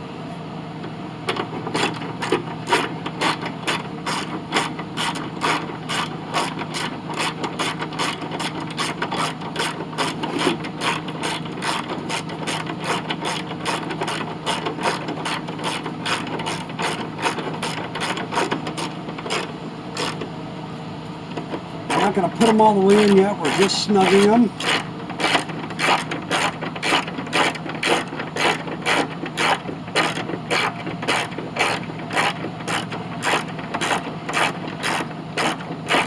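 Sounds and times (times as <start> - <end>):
ratchet wrench clicking: 24.0 - 36.0.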